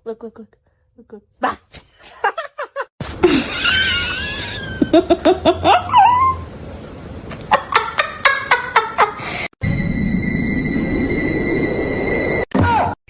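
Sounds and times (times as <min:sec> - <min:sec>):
people laughing in rapid bursts: 0:02.3 - 0:05.9.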